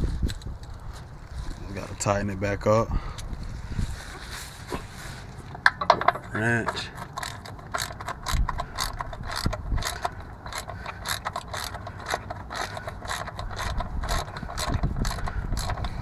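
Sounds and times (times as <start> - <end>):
ratchet wrench clicking: 5.4 - 16.0.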